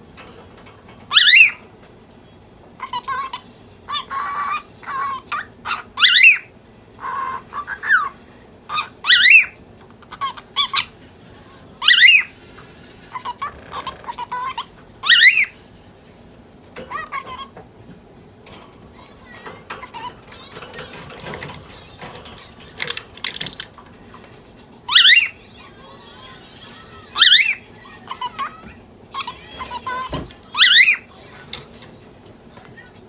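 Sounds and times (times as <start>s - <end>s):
cockatiel chattering: 1.1s - 1.6s, 2.8s - 11.0s, 11.8s - 12.4s, 13.0s - 15.6s, 16.8s - 17.6s, 18.5s - 24.2s, 24.8s - 31.8s.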